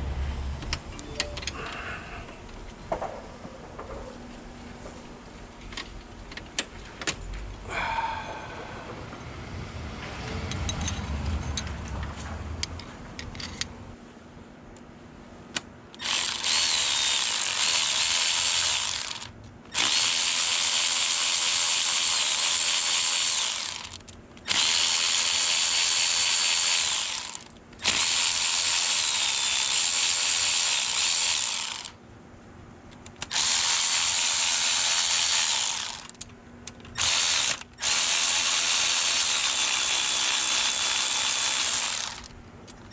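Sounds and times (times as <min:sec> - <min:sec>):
power tool whining in bursts: 0:16.0 - 0:32.0, 0:33.2 - 0:36.2, 0:36.9 - 0:42.3.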